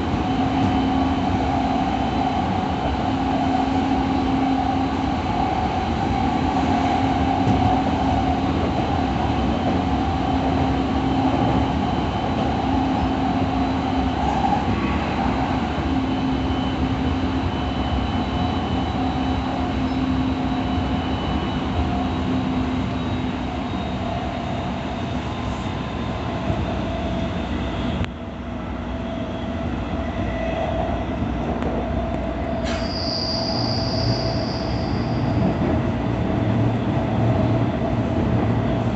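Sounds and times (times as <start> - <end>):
train wheels rumbling on rail: 0.0 - 38.9
wheel squeal: 32.6 - 35.6.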